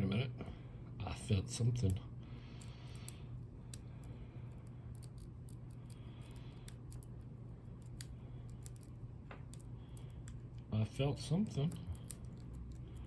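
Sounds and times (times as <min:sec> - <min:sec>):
low hum: 0:00.0 - 0:13.0
lock pick clicking and scratching: 0:03.7 - 0:10.7, 0:11.4 - 0:13.0.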